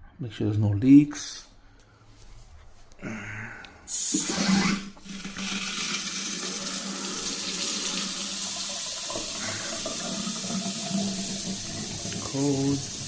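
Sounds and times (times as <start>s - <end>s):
faucet running water into sink: 4.0s - 13.0s.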